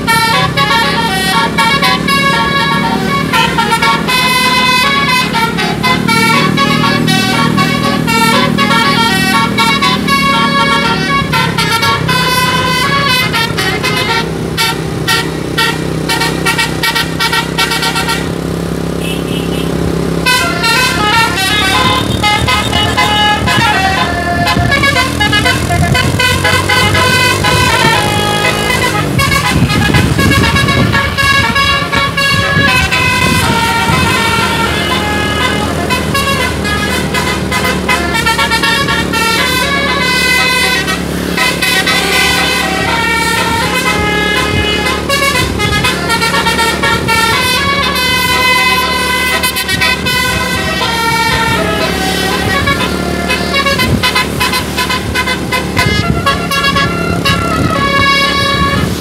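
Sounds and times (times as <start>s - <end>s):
bus musical air horns: 0.0s - 59.0s
steady low drone: 19.8s - 59.0s.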